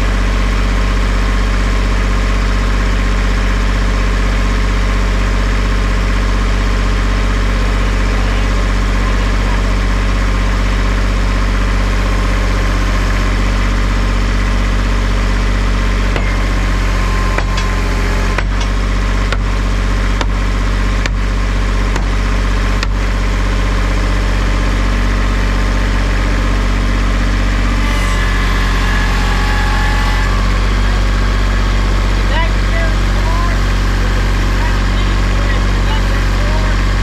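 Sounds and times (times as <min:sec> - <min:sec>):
diesel tractor engine idling: 0:00.0 - 0:37.0
sharp knocks: 0:17.0 - 0:19.5, 0:21.9 - 0:22.1.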